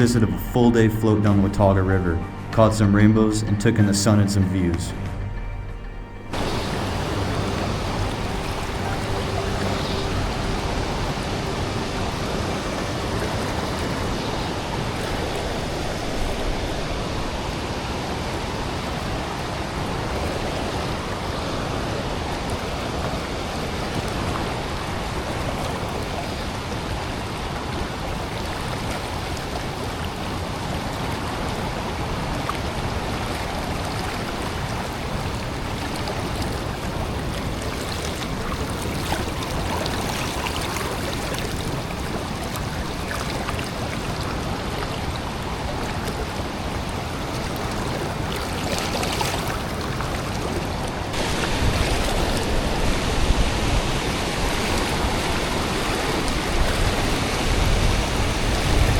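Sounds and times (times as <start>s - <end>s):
deep rumble: 0.0s - 13.6s
river water rushing and splashing: 0.0s - 58.9s.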